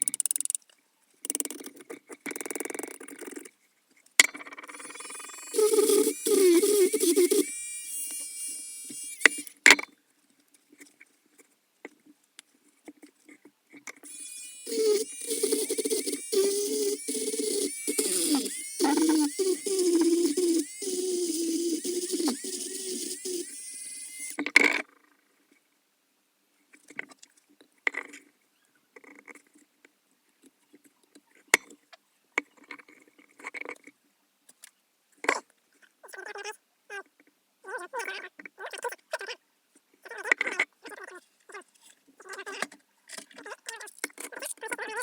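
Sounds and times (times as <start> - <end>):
rotary tool grinding with high whine: 4.7 - 9.9, 14.0 - 24.4
small scattered ticks: 14.1 - 24.4.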